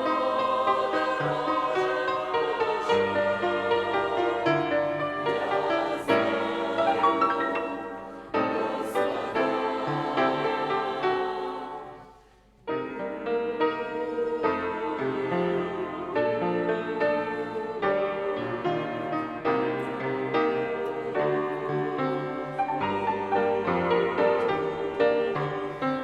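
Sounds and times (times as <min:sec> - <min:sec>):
choir singing a hymn: 0:00.0 - 0:26.0.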